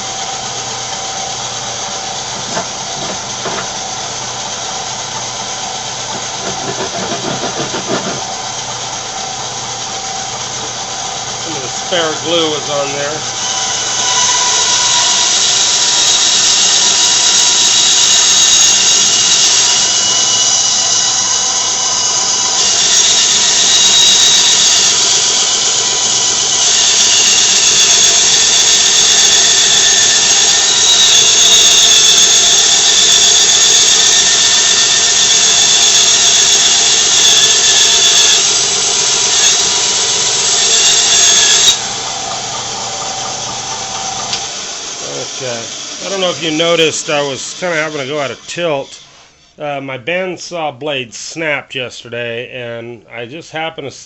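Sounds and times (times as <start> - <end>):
bandsaw squealing through wood: 0.0 - 49.6.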